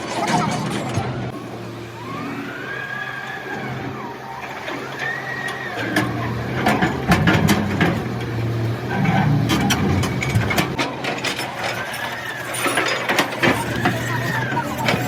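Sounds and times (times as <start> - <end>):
diesel engine running: 0.0 - 15.0
engine whine: 0.0 - 15.0.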